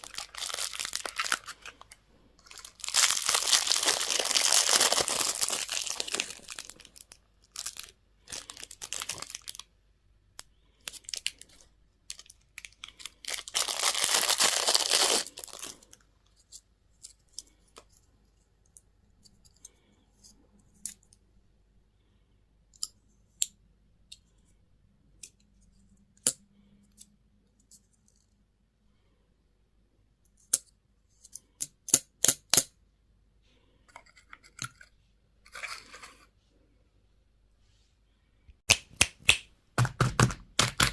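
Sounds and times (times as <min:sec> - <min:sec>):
candy packaging crinkling and tearing: 0:00.0 - 0:09.7, 0:10.8 - 0:16.0.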